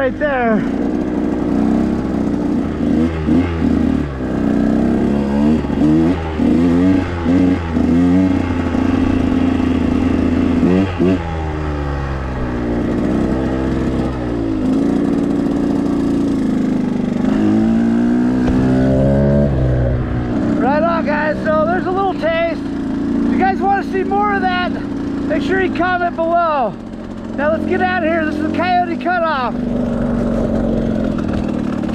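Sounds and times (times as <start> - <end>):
dirt bike engine revving: 0.0 - 31.9.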